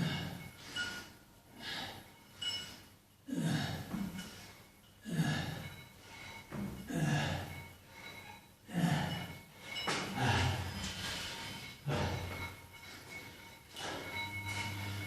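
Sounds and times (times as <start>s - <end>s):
man breathing hard: 0.0s - 14.4s
man grunting: 3.3s - 3.9s, 5.0s - 5.7s, 6.9s - 7.5s, 8.7s - 9.3s.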